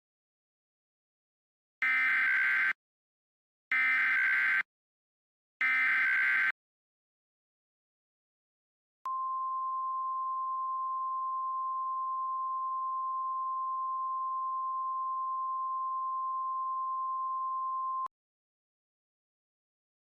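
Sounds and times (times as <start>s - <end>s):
steady alarm tone: 5.6s - 6.5s.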